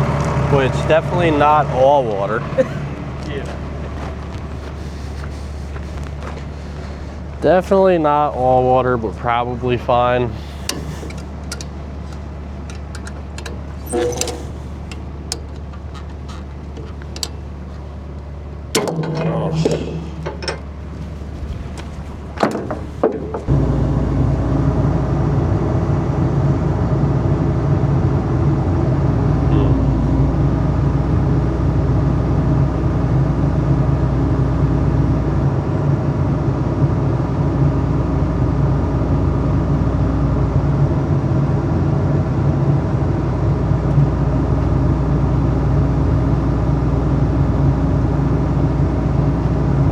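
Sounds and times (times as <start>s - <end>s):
engine running: 0.0s - 49.9s
knocks and clunks: 10.3s - 23.6s.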